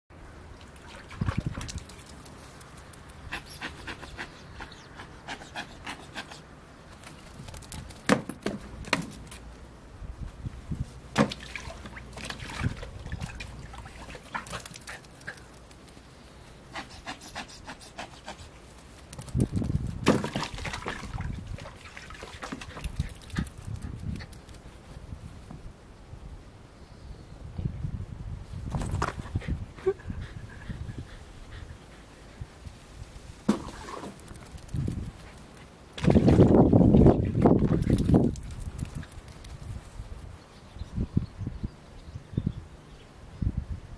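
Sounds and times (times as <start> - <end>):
water splashing: 0.5 - 2.4, 11.1 - 15.2, 20.0 - 23.4, 33.5 - 34.4
dog panting: 3.3 - 6.4, 29.3 - 32.6.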